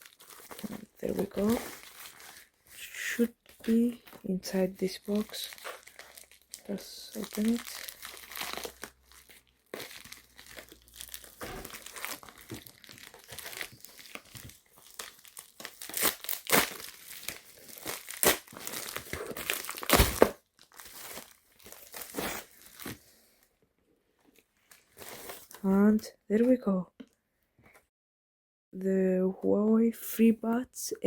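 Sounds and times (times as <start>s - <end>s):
packaging ripping: 0.0s - 2.5s, 5.1s - 23.0s
packaging rustling and crackling: 0.0s - 4.2s, 4.8s - 23.0s.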